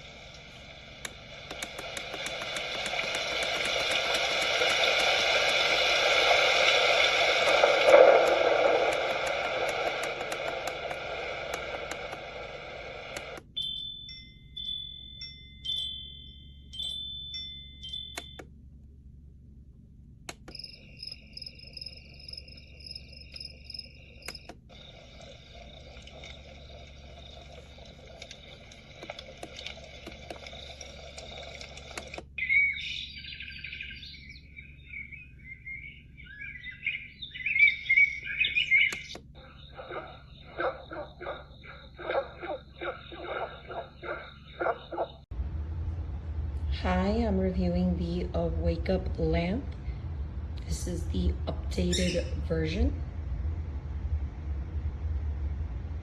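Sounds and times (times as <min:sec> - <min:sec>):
steady hiss: 0:00.0 - 0:13.5
steady high tone: 0:02.0 - 0:18.5
electronic alarm beeps: 0:13.1 - 0:18.5, 0:20.3 - 0:24.7, 0:32.4 - 0:45.2, 0:51.8 - 0:52.5
synthetic bird chirps: 0:13.5 - 0:17.1, 0:32.4 - 0:45.2, 0:51.8 - 0:52.4.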